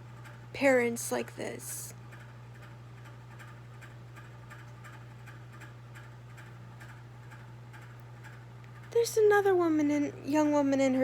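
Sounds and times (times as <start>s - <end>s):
low electrical hum: 0.0s - 11.0s
faint regular ticking: 2.0s - 9.7s.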